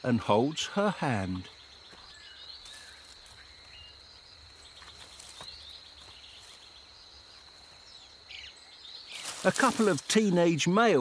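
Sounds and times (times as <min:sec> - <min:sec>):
bird chirps: 0:00.4 - 0:10.8
high-pitched insect buzz: 0:09.1 - 0:10.3.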